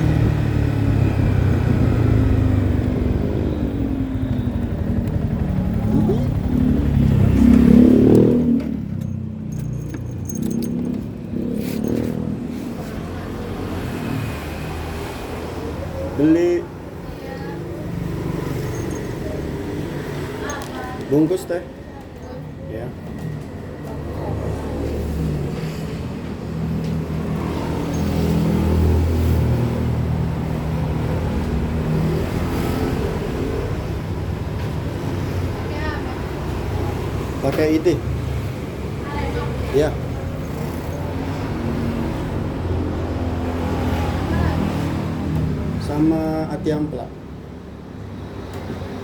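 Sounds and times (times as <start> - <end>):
vehicle engine rumbling: 0.0 - 14.0, 18.0 - 21.2, 24.9 - 32.1
vehicle engines passing: 0.0 - 49.0.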